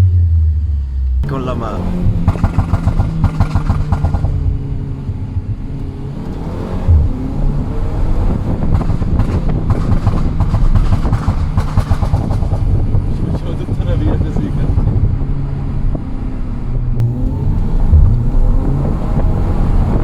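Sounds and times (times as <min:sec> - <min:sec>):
loud exhaust bang: 0:00.0 - 0:05.7, 0:08.2 - 0:13.2, 0:17.0 - 0:20.0
engine and exhaust popping: 0:00.0 - 0:20.0.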